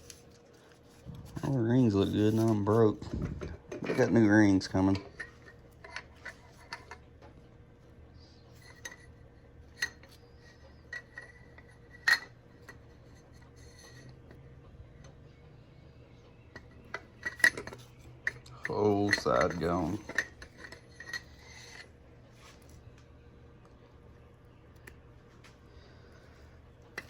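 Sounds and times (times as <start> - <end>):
faint low hum: 0.0 - 27.0
metallic clinks of tools and parts: 16.6 - 21.8.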